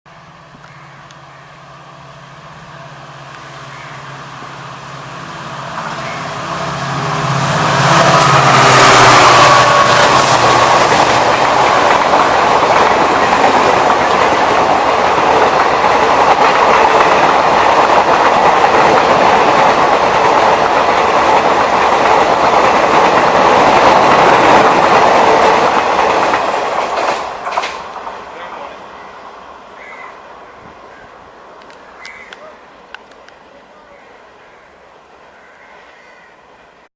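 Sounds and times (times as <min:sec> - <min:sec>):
diesel locomotive passing: 0:00.1 - 0:36.9
train wheels clickety-clack: 0:08.0 - 0:28.1.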